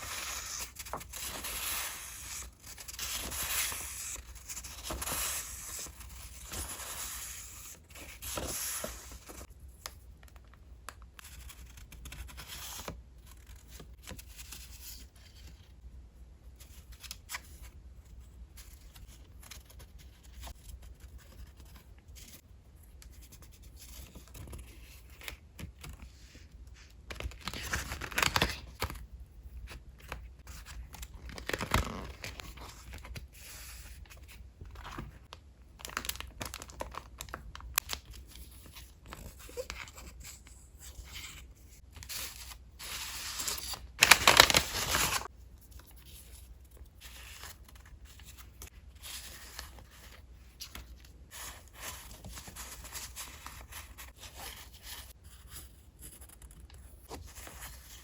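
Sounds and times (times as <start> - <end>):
paper packaging rustling: 27.1 - 29.0, 30.0 - 33.8, 35.8 - 40.3, 42.0 - 45.3.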